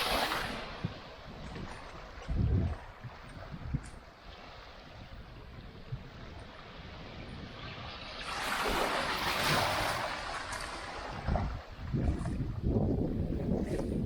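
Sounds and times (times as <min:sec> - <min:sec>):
wave breaking on beach: 0:00.0 - 0:00.9, 0:06.6 - 0:11.8
steady surf: 0:00.0 - 0:14.0
wind buffeting microphone: 0:00.0 - 0:14.0.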